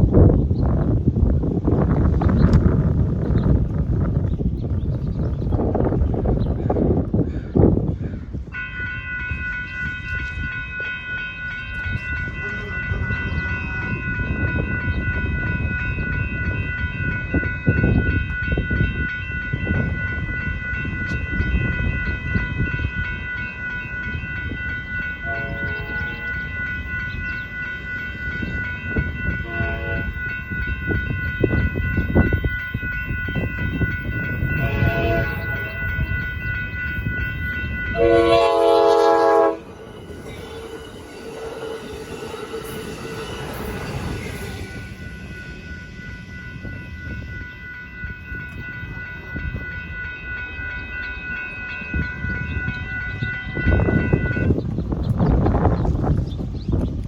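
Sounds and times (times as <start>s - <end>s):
railroad crossing bells ringing: 0.0s - 57.0s
train rumbling past: 0.0s - 57.0s
train horn blasts: 8.5s - 42.8s, 43.6s - 54.7s.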